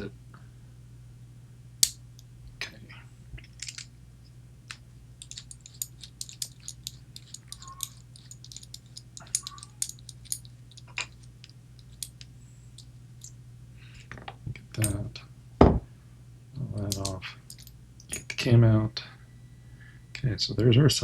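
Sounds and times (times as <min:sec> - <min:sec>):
steady low hum: 0:00.0 - 0:21.0
small metal clicks and taps: 0:04.7 - 0:13.4.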